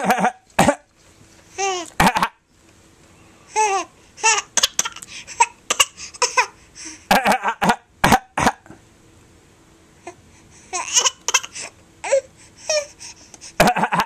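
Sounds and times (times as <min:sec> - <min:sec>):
baby fake coughing: 0:00.0 - 0:00.9, 0:02.0 - 0:02.4, 0:04.2 - 0:06.5, 0:07.1 - 0:08.7, 0:10.8 - 0:11.7, 0:13.6 - 0:14.0.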